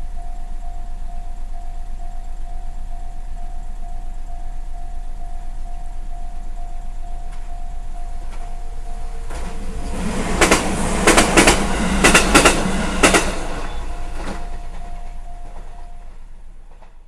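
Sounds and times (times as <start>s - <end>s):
level-crossing alarm ringing: 0.0s - 16.6s
train rumbling past: 4.3s - 17.0s
wheel clacks over rail joints: 9.1s - 17.0s.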